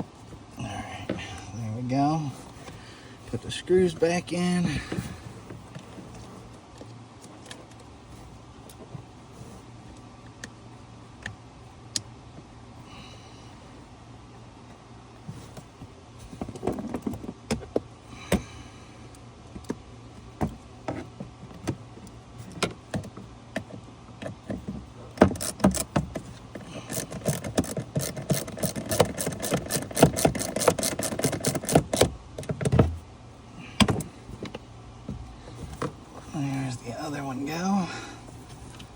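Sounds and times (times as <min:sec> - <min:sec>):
rapid ratcheting clicks: 0:25.2 - 0:26.0, 0:26.8 - 0:32.1
hand tools clicking and knocking: 0:25.2 - 0:33.0.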